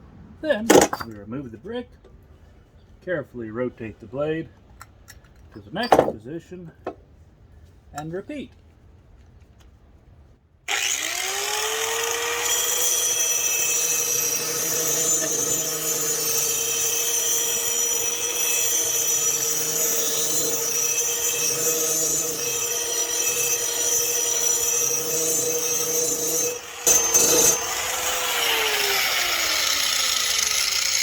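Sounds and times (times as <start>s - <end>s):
angle grinder grinding metal: 10.7s - 31.0s.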